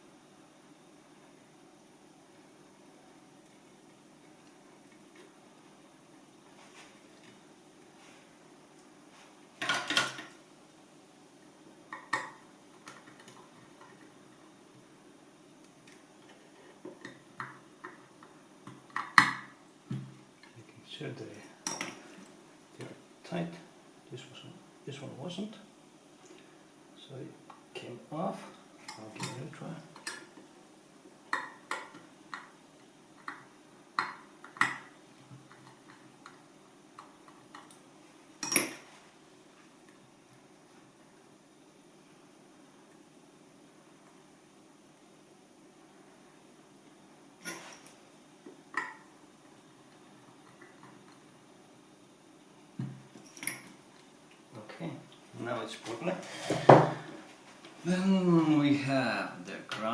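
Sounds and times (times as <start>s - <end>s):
metal tools clinking: 21.4s - 22.3s, 47.4s - 48.0s.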